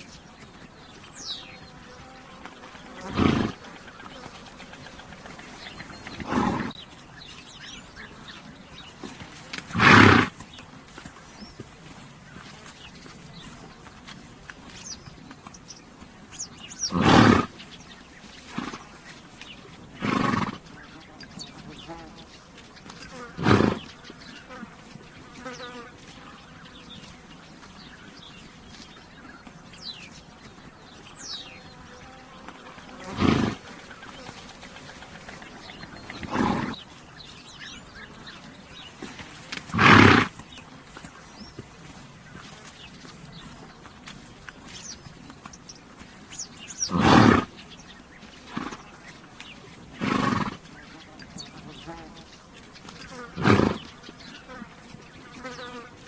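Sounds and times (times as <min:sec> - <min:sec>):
small birds chirping: 0:00.0 - 0:56.0
horse snorting through nostrils: 0:02.9 - 0:03.7, 0:04.8 - 0:06.9, 0:08.9 - 0:10.6, 0:16.8 - 0:17.6, 0:18.4 - 0:19.0, 0:19.8 - 0:20.8, 0:23.0 - 0:24.0, 0:32.9 - 0:37.0, 0:39.0 - 0:40.6, 0:46.8 - 0:47.6, 0:48.4 - 0:49.0, 0:49.9 - 0:50.7, 0:53.1 - 0:53.9.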